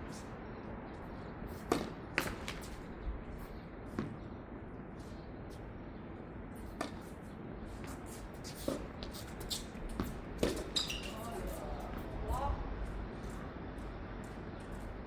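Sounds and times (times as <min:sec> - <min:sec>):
tennis ball bounces: 0:01.6 - 0:02.8, 0:09.9 - 0:10.8.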